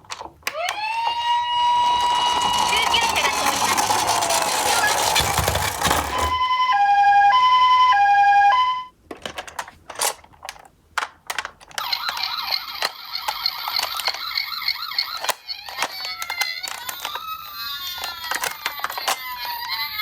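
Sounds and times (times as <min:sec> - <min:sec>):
two-tone ambulance siren: 0:00.6 - 0:03.8, 0:06.3 - 0:08.9.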